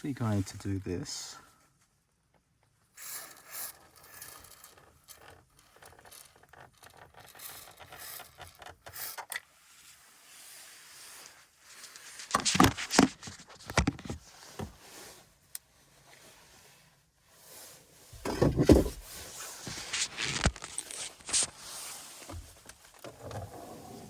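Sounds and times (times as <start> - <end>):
plastic trim rubbing and scraping: 12.0 - 14.2, 18.2 - 21.7.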